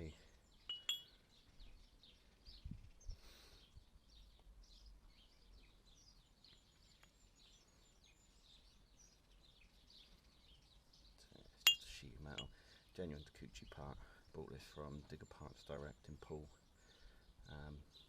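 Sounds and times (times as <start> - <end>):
faint birds chirping: 0.0 - 18.0.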